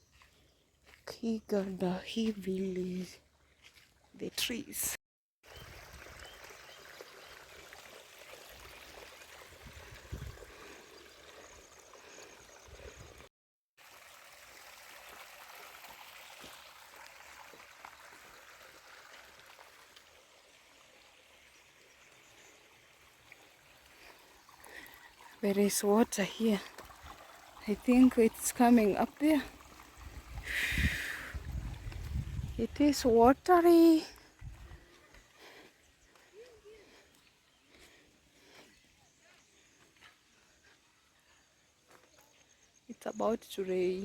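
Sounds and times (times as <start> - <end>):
stream trickling: 0.0 - 4.7, 5.4 - 44.0.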